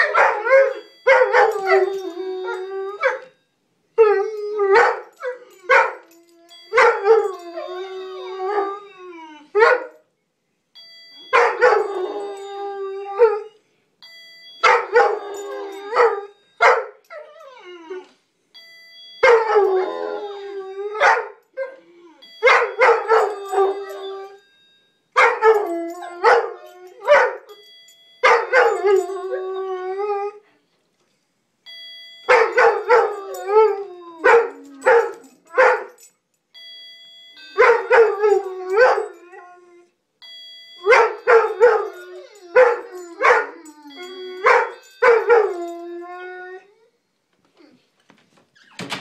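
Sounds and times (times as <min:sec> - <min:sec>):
dogs howling: 0:00.0 - 0:03.2, 0:22.8 - 0:24.4, 0:28.4 - 0:30.4, 0:32.3 - 0:35.9, 0:37.6 - 0:39.8, 0:40.9 - 0:46.8
dog barks: 0:21.0 - 0:21.4, 0:34.2 - 0:35.9.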